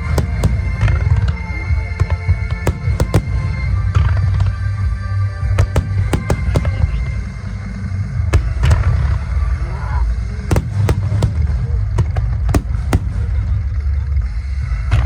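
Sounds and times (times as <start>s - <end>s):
fireworks bursting with sharp bangs: 0.0s - 4.6s, 5.4s - 7.7s, 8.3s - 9.4s, 10.5s - 14.0s
deep rumble of booms: 0.0s - 15.0s.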